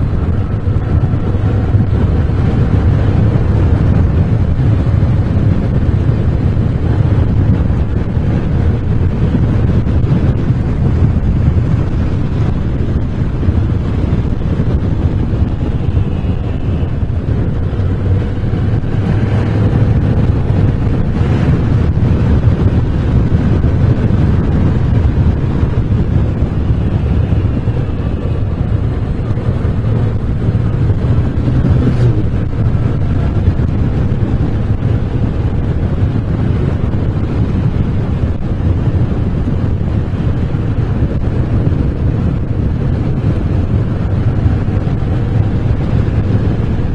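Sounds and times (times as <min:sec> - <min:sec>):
motorcycle engine running: 0:00.0 - 0:46.9
wind buffeting microphone: 0:00.0 - 0:46.9.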